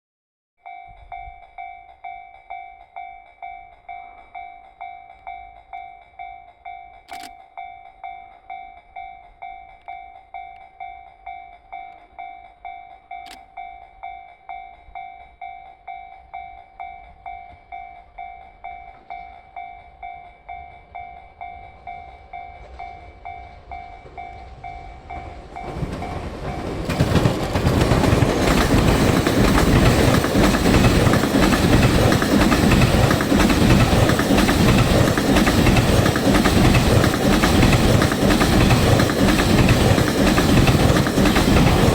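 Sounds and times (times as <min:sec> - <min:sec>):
freight train running noise: 0:16.2 - 0:41.9
wheels clacking over rail joints: 0:21.8 - 0:41.9.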